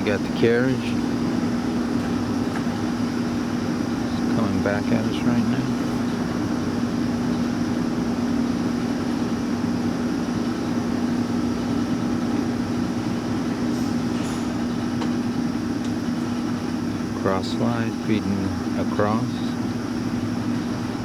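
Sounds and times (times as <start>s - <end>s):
lathe humming: 0.0s - 21.0s.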